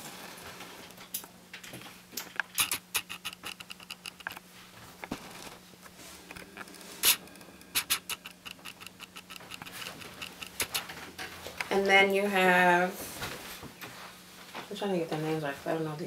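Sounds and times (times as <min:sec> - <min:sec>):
faint steady hum: 0:00.0 - 0:16.0
sharp clicks: 0:02.2 - 0:04.4, 0:06.3 - 0:11.0
paper pages rustling: 0:02.4 - 0:11.7.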